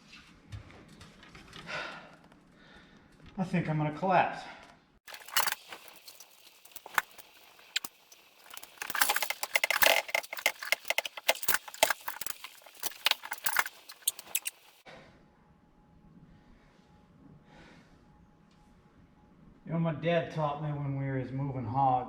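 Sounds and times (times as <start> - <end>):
metal hardware clinking: 5.1 - 14.8.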